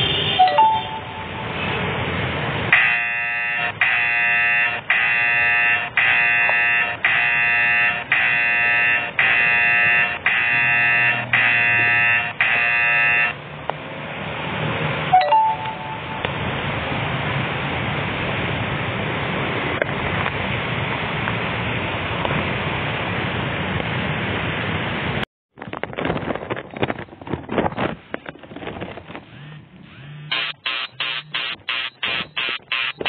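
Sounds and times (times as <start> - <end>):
short ding: 0.4 - 1.4, 15.2 - 16.4
electronic phone ringtone: 0.4 - 1.6, 15.2 - 16.3.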